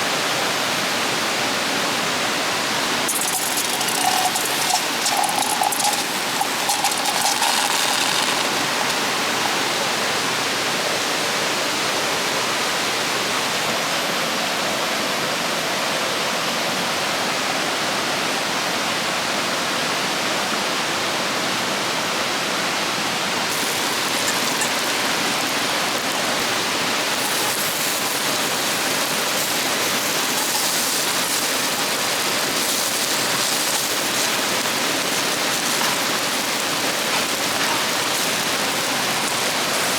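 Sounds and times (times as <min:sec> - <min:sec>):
river rushing over rocks: 0:22.7 - 0:39.9.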